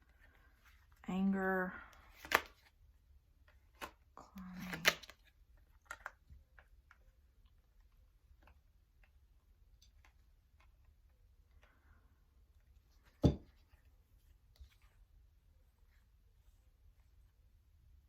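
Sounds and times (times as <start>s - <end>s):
cards clicking on a table: 2.2s - 2.7s.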